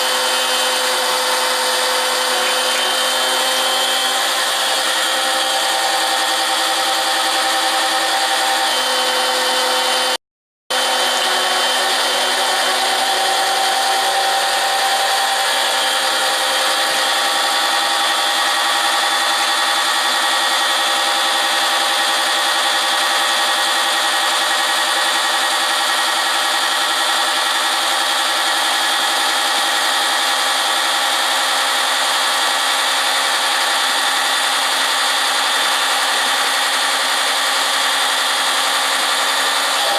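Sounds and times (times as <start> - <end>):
garden tractor engine running: 0.0 - 8.8.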